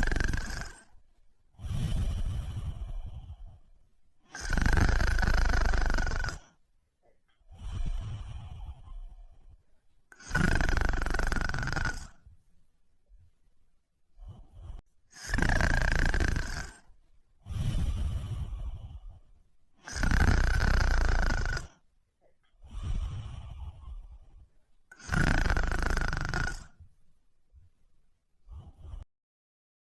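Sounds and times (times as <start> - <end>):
person snoring: 0.0 - 1.0, 1.6 - 6.6, 7.5 - 12.3, 14.2 - 19.2, 19.8 - 21.8, 22.6 - 26.8, 28.4 - 29.1
soft breathing: 0.0 - 12.4, 13.1 - 27.0, 28.4 - 29.1.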